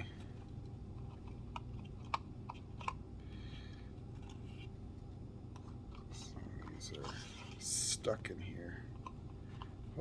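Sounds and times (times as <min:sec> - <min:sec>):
cards clicking and tapping: 0:00.0 - 0:03.0
low steady hum: 0:00.0 - 0:10.0.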